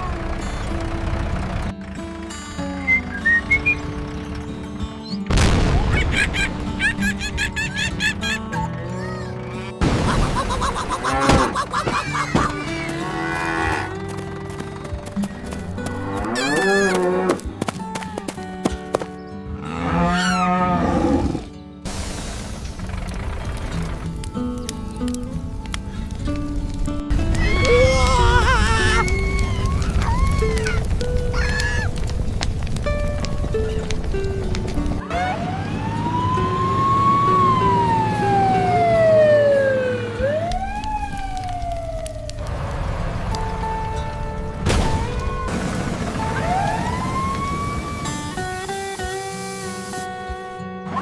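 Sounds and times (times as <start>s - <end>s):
background music: 0.0s - 29.3s, 32.1s - 51.0s
cow mooing: 12.8s - 14.0s, 16.0s - 17.5s, 19.6s - 21.5s
siren-like wailing tone: 35.0s - 42.7s, 44.9s - 48.8s.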